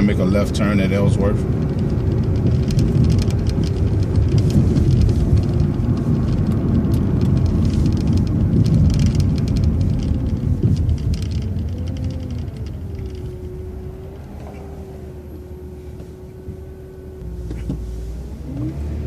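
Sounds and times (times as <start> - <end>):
bus engine and road rumble: 0.0 - 19.0
clicking rattles: 1.5 - 14.7.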